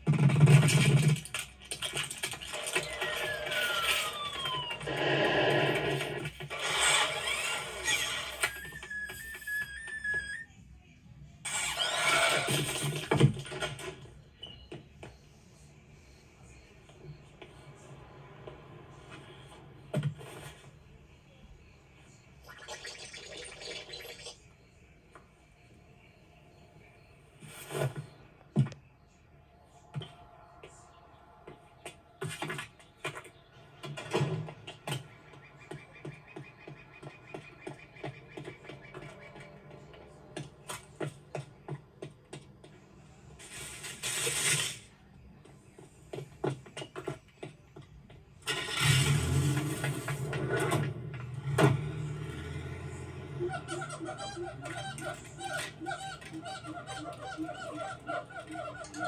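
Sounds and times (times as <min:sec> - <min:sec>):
car engine starting and running: 0:48.4 - 0:53.7.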